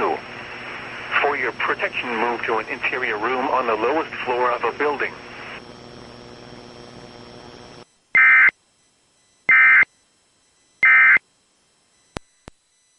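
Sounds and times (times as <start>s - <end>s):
faint broadcast hiss: 0.0s - 12.9s
digital data tone bursts: 8.1s - 8.6s, 9.3s - 9.9s, 10.8s - 11.2s.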